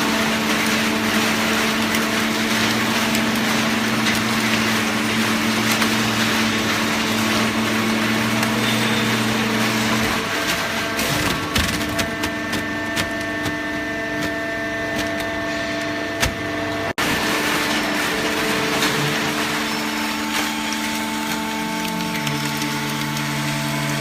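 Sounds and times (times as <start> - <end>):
hydraulic baler motor humming: 0.0 - 24.0.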